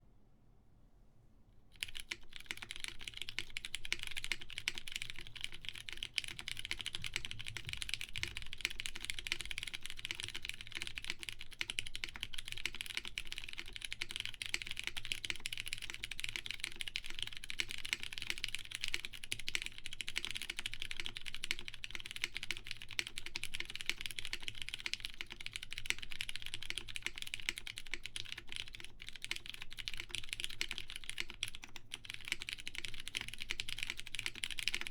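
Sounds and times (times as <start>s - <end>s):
fast typing on mechanical keyboard: 1.8s - 34.9s.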